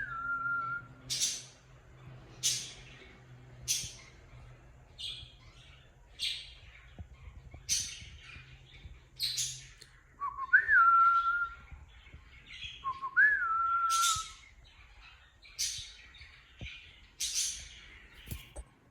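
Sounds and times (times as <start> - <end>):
cockatiel whistles: 12.8 - 14.4.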